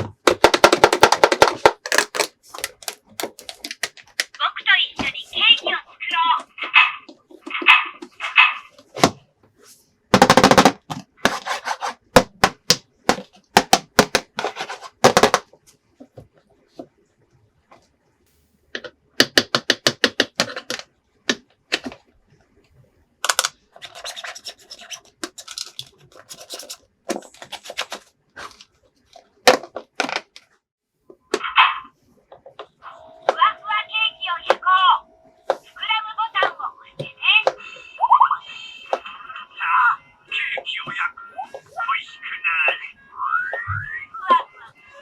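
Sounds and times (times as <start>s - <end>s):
plastic toys clicking and clattering: 0.2s - 4.5s, 18.8s - 22.1s, 23.2s - 30.5s.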